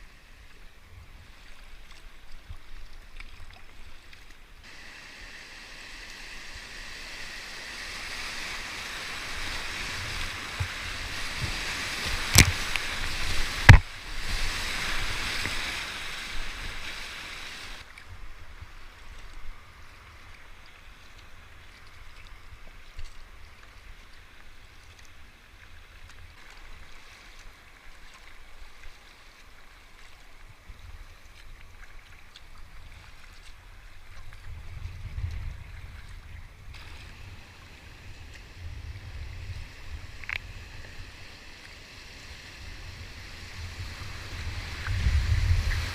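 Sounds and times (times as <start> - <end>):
paddle splashes: 0.3 - 45.9
river water rushing: 4.6 - 17.9.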